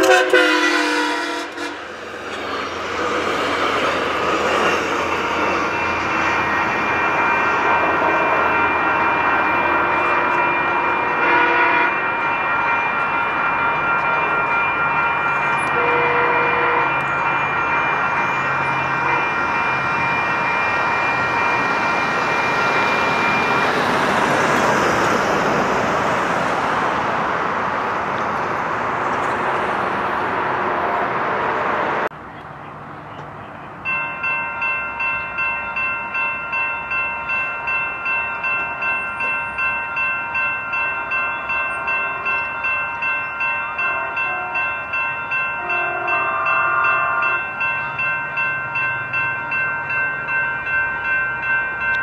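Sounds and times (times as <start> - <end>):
train horn chord: 0.0 - 1.9, 11.0 - 12.0, 15.7 - 17.1, 19.0 - 19.4, 43.8 - 44.8, 45.6 - 47.6
railroad crossing bell ringing: 0.0 - 31.0, 32.3 - 52.0
train passing: 0.0 - 52.0.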